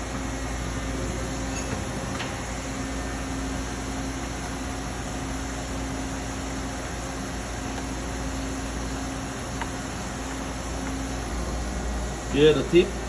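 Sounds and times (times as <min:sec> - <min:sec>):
machine hum: 0:00.0 - 0:13.0.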